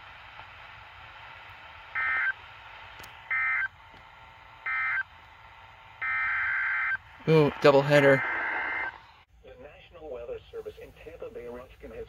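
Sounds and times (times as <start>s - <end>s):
steady low hiss: 0.0s - 12.0s
digital data warble bursts: 6.1s - 9.0s.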